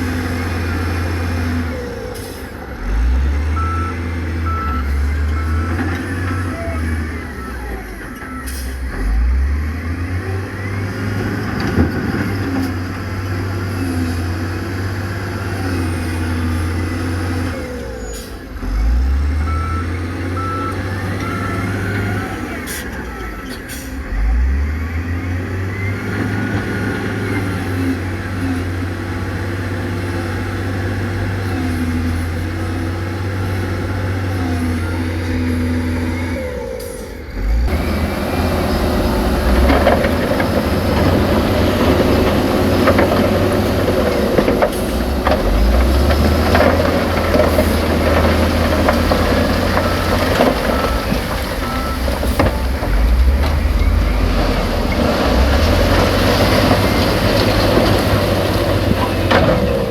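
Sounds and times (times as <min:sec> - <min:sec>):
diesel machinery revving: 0:00.0 - 0:59.9
short beeps: 0:49.8 - 0:54.7.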